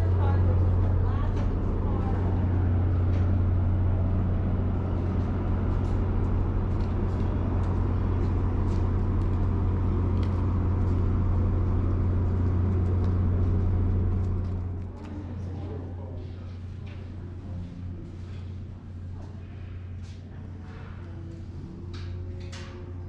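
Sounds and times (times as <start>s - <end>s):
large engine idling: 0.0s - 23.0s.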